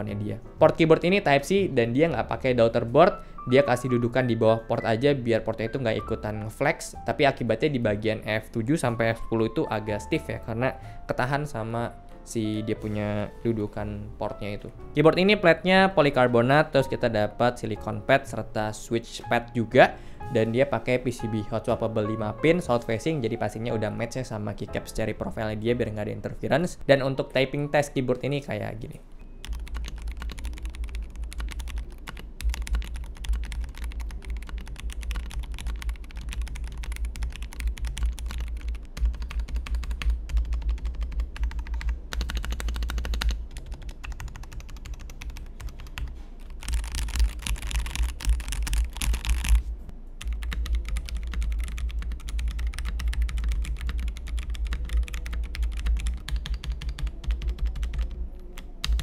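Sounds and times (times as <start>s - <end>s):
mechanical keyboard typing: 29.4s - 49.6s, 50.2s - 59.0s.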